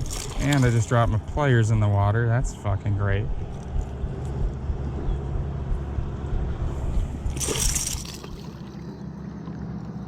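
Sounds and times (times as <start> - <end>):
water splashing and sloshing: 0.0 - 1.5, 6.5 - 10.0
low rumble: 0.0 - 10.0.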